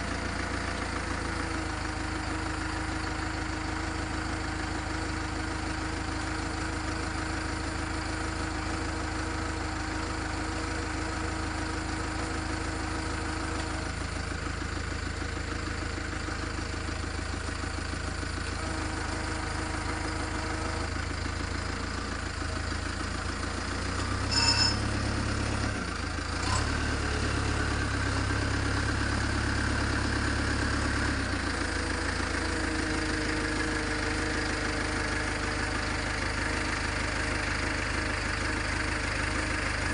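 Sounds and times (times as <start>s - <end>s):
backhoe engine idling: 0.0s - 39.9s
sharp ringing clank: 24.2s - 25.1s.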